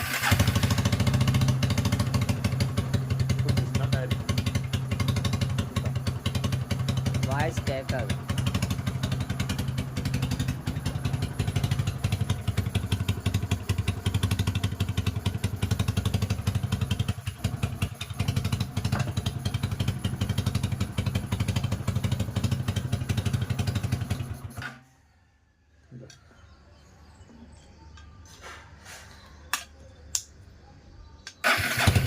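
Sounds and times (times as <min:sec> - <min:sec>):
motorcycle engine idling: 0:00.0 - 0:24.6, 0:31.4 - 0:32.0.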